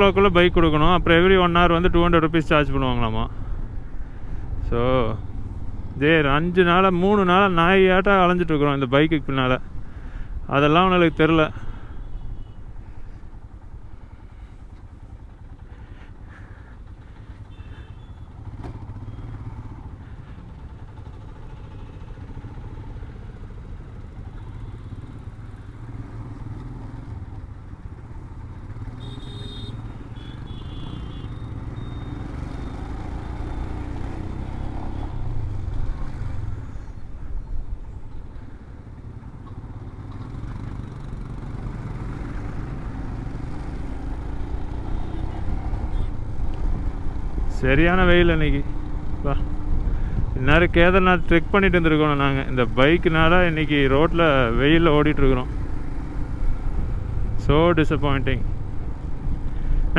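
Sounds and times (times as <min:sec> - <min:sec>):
road noise: 0:00.0 - 0:59.9
motorcycle engine running: 0:11.9 - 0:59.9.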